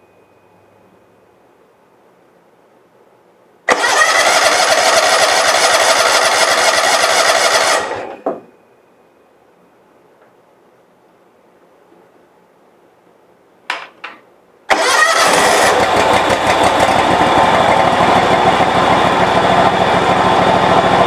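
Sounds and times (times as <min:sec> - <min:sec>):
engine cranking: 0:03.7 - 0:08.2, 0:14.7 - 0:21.0.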